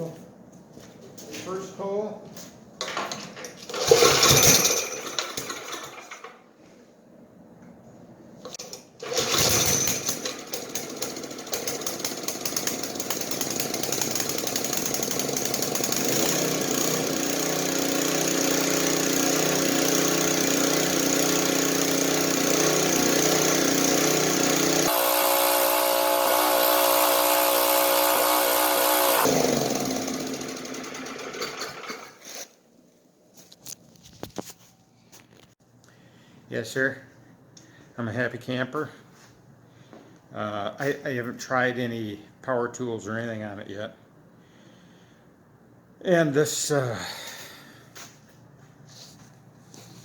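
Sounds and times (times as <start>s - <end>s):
generator engine starting and running: 3.4s - 6.4s, 8.5s - 32.5s.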